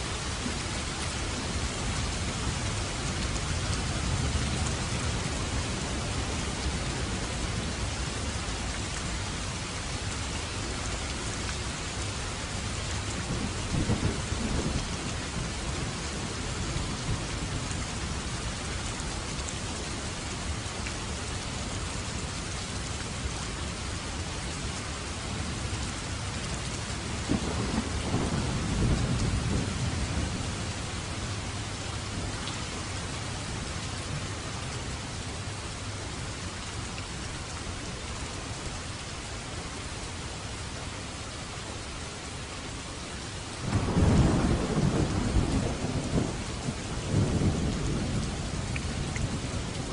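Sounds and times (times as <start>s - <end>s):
steady rain falling: 0.0s - 49.9s
low rolls of thunder: 13.1s - 17.6s, 27.0s - 31.5s, 43.6s - 49.9s.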